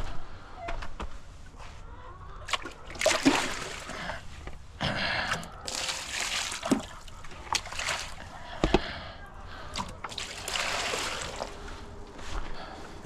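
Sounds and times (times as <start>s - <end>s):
water sloshing and splashing: 2.5s - 4.5s, 5.3s - 8.6s, 9.6s - 11.9s.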